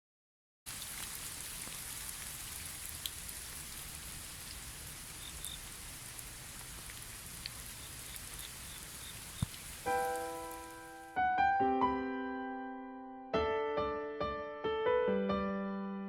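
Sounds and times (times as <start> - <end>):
raindrops ticking: 0.7 - 11.1
steady rain falling: 0.7 - 11.2.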